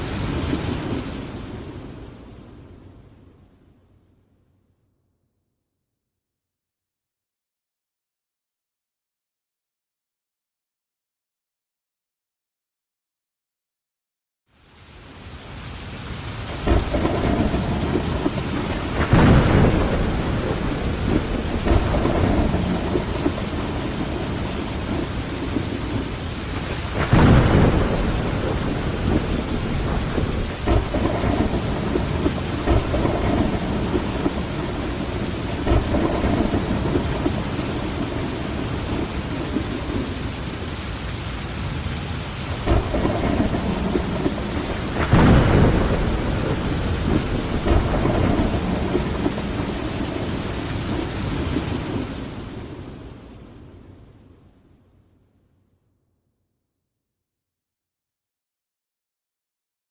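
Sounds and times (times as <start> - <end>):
rain on window glass: 0.0 - 2.8, 14.5 - 54.4
thunder rumbling: 0.0 - 3.4, 15.3 - 54.4.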